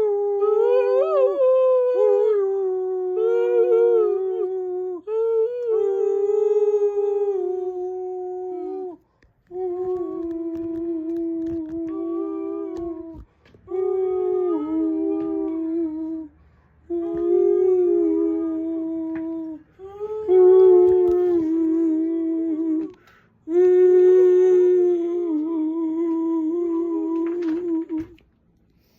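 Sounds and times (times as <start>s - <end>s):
voices humming long tones: 0.0s - 28.3s
short breaths: 16.3s - 16.9s, 22.9s - 23.5s.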